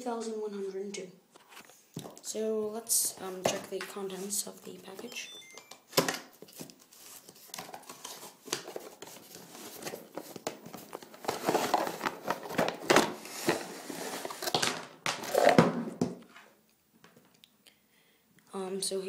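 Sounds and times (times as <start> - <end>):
packaging crinkling and rustling: 6.3 - 15.6.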